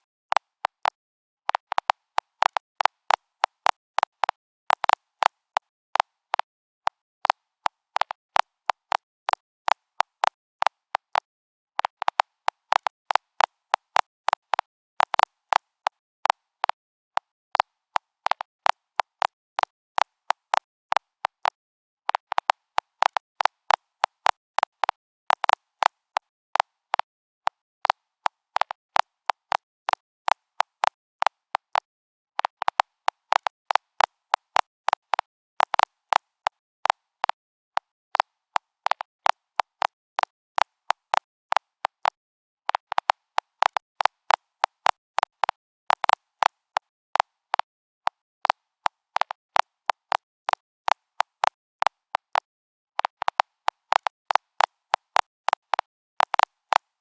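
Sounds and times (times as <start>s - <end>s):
geiger counter clicking: 0.4s - 5.7s, 18.0s - 26.3s, 30.6s - 37.4s, 38.8s - 47.7s, 48.4s - 56.8s.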